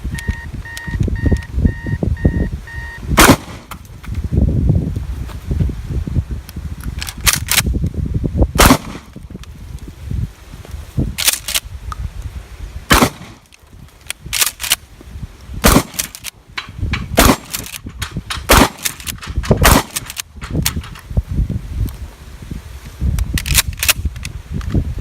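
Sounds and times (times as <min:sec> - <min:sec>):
gunshots: 0:03.2 - 0:03.8, 0:08.6 - 0:09.1, 0:12.9 - 0:13.4, 0:15.6 - 0:16.1, 0:17.2 - 0:17.7, 0:18.3 - 0:20.2.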